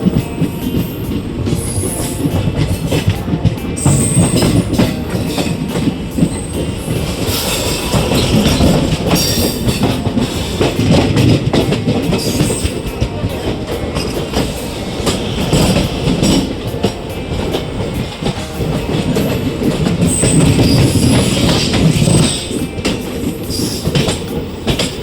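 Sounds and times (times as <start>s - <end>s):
train wheels clattering over rails: 0.0s - 25.0s
wheel squeal: 6.2s - 11.3s, 19.6s - 25.0s.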